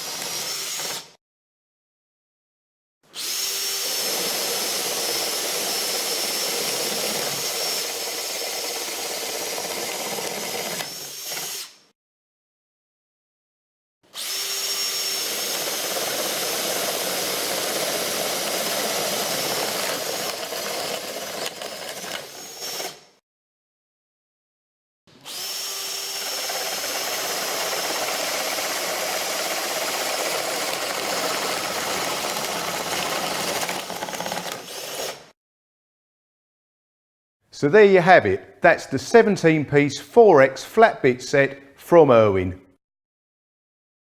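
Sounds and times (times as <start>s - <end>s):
power drill boring into wood: 0.0s - 1.2s, 3.2s - 11.9s, 14.2s - 23.2s, 25.1s - 35.4s.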